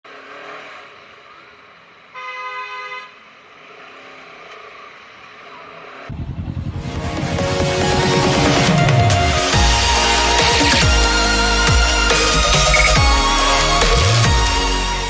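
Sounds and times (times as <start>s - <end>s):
vehicle horn: 2.1s - 3.2s
electronic music with heavy beat: 6.1s - 15.0s.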